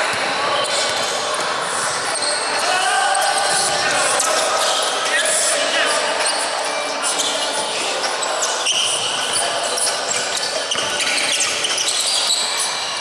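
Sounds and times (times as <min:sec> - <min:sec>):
short high squeaks: 0:06.2 - 0:12.9.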